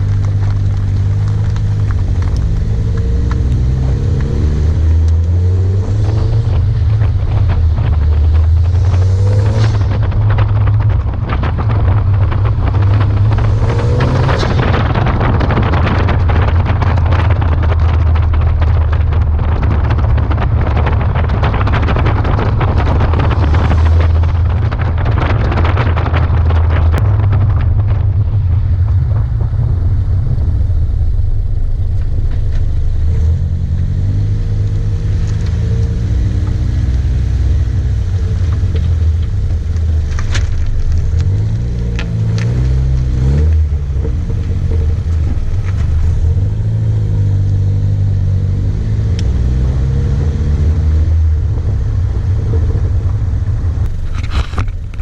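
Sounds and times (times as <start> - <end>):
turbocharged car engine: 0.0 - 55.0
wind buffeting microphone: 0.0 - 55.0.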